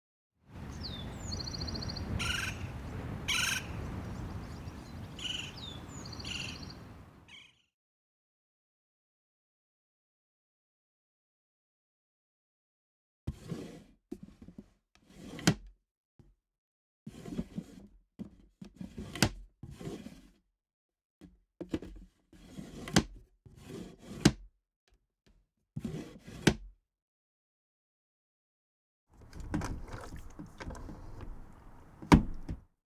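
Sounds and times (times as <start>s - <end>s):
birds calling: 0.8s - 7.5s, 29.2s - 32.6s
wood scraping on wood: 29.2s - 32.6s
wooden lid knocking shut: 29.2s - 32.6s.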